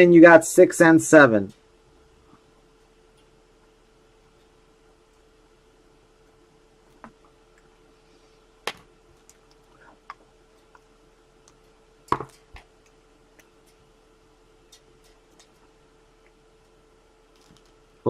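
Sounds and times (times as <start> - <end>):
faint hum: 0.0 - 18.0
light clicks and taps: 14.6 - 16.8.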